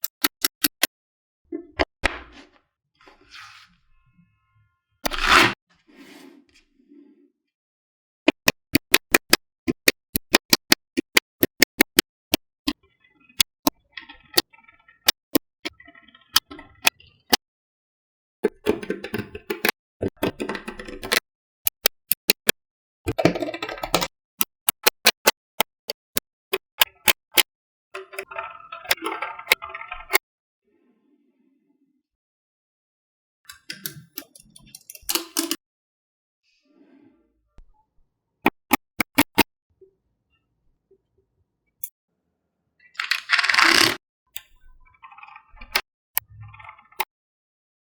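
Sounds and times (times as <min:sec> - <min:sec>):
magnetic balls snapping together: 0:00.0 - 0:00.9, 0:08.3 - 0:12.4, 0:38.5 - 0:39.4.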